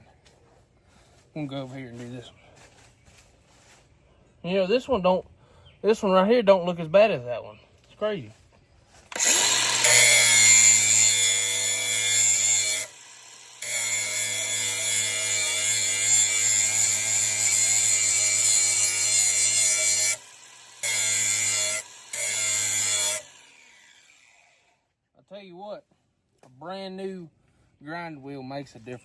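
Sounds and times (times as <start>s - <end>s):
electric grinder sharpening steel blade: 9.1s - 24.6s.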